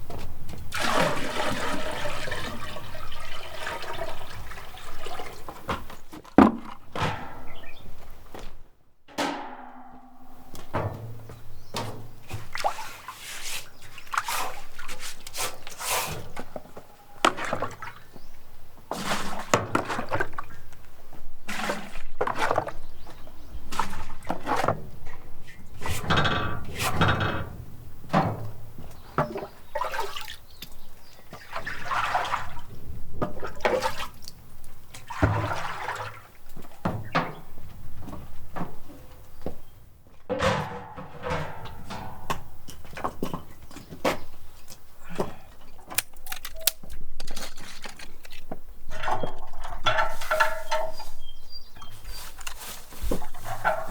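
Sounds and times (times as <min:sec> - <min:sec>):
water splashing and sloshing: 0:00.0 - 0:08.6, 0:09.2 - 0:53.9
knocks: 0:09.1 - 0:12.2.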